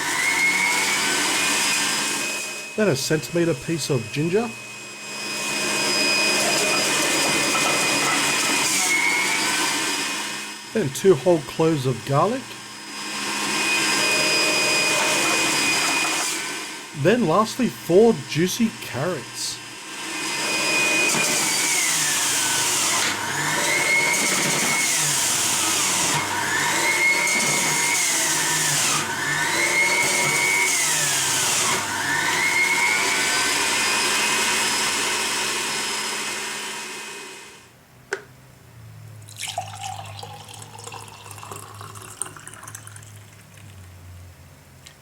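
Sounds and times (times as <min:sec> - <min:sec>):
electric juicer motor whining: 0:00.0 - 0:02.8, 0:04.0 - 0:10.7, 0:12.5 - 0:17.5, 0:19.2 - 0:38.2.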